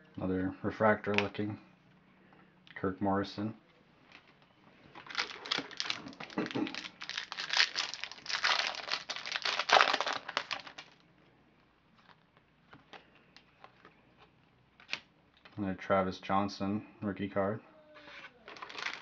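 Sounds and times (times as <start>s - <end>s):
foil wrapper crinkling: 5.0s - 11.0s, 18.5s - 19.0s.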